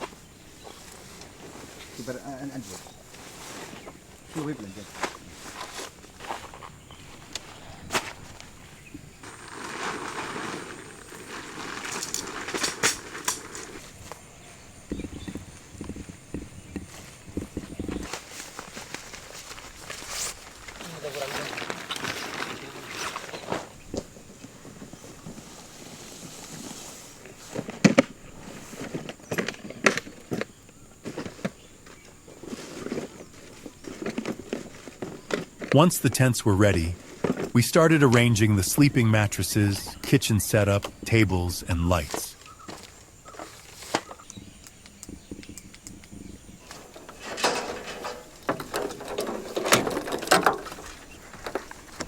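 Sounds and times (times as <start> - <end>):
tent pitching knocks and clicks: 46.7 - 51.7.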